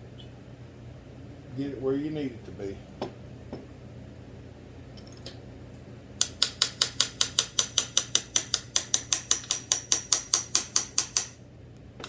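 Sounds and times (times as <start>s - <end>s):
hammer tapping on metal: 6.2s - 11.4s.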